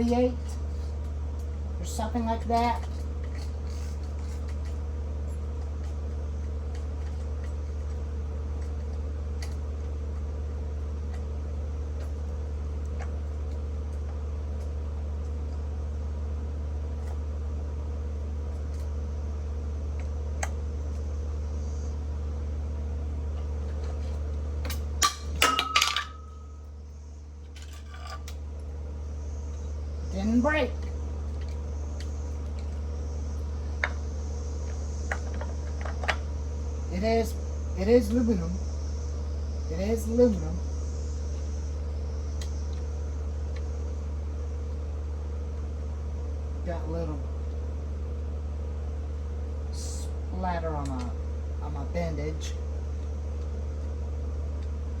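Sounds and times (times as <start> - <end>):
steady low hum: 0.0 - 55.0
small metal parts clattering: 23.8 - 26.4, 27.5 - 28.4.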